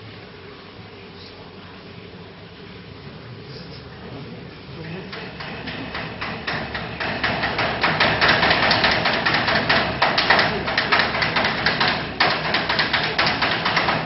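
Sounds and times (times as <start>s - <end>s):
fast hard knocks: 5.1s - 14.0s.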